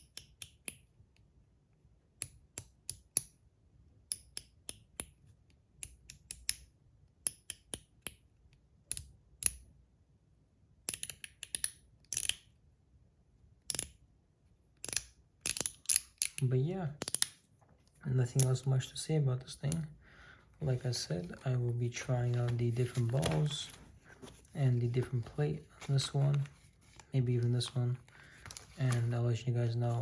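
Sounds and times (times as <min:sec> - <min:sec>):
metallic clicks of fidget slider: 0:13.7 - 0:14.0.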